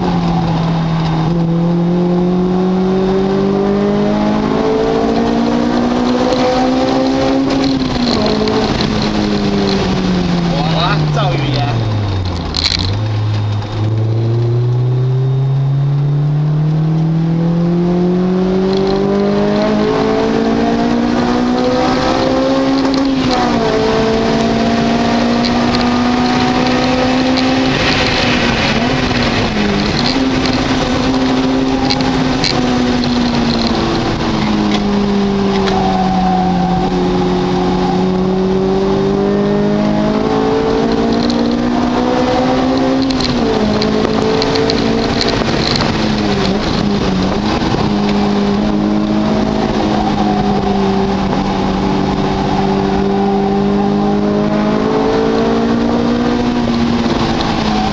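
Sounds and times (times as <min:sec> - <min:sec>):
race car engine accelerating: 0:00.0 - 0:57.9.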